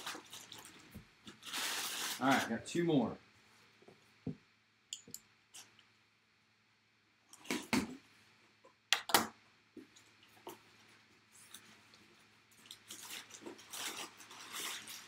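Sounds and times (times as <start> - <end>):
packaging rustling: 0.0 - 2.5, 12.6 - 15.0.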